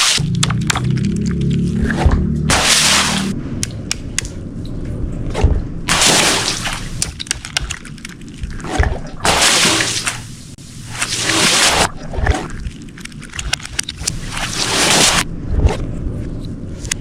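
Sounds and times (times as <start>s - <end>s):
sharp pops and clicks: 0.0s - 1.4s, 3.6s - 4.4s, 5.9s - 10.2s, 11.0s - 15.8s
water splashing: 0.0s - 3.4s, 5.4s - 15.8s.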